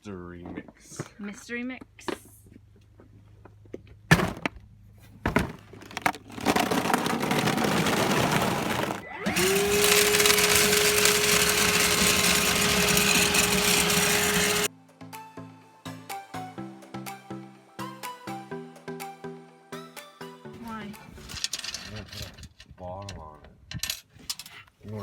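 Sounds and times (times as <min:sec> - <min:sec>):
vacuum cleaner motor whining: 0:07.8 - 0:14.7.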